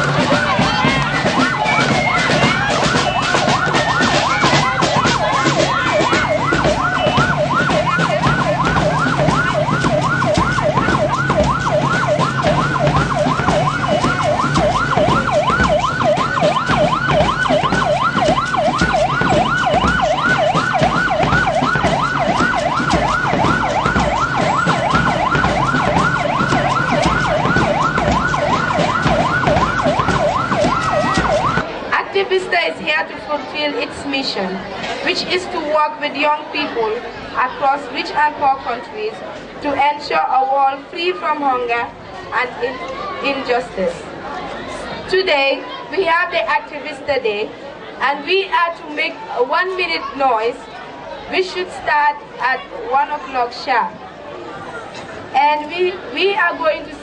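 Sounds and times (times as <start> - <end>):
yelp siren: 0.0 - 31.7.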